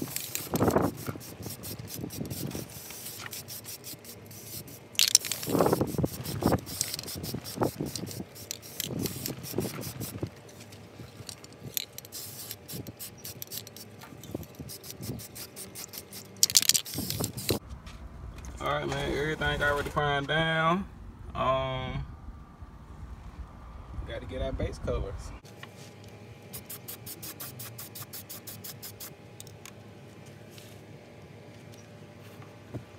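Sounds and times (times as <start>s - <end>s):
aerosol can spraying: 0.0s - 10.3s, 12.0s - 17.6s, 26.5s - 29.1s
clicks and knocks of parts: 5.0s - 5.6s, 10.4s - 12.2s, 16.3s - 17.6s.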